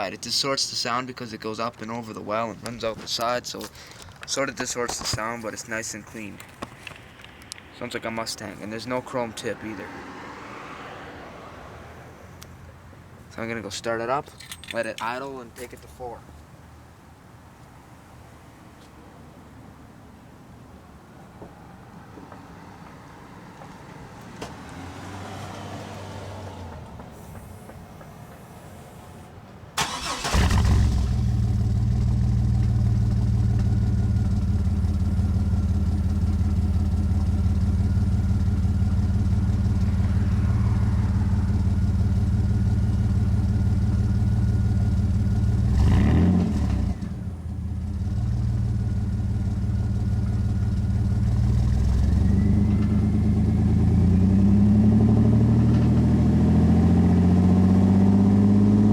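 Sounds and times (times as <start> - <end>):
pickup truck engine idling: 28.3 - 45.5.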